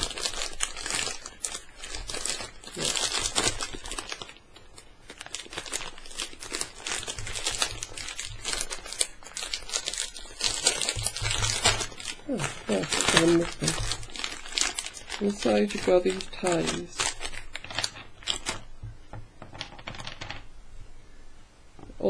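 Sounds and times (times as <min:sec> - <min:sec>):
packaging tearing: 0:00.0 - 0:18.8
packaging crinkling and rustling: 0:00.0 - 0:20.5.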